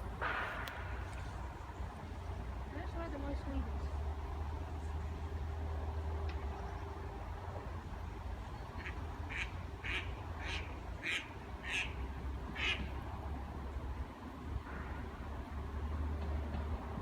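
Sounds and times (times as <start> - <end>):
steady low rumble: 0.0 - 5.9.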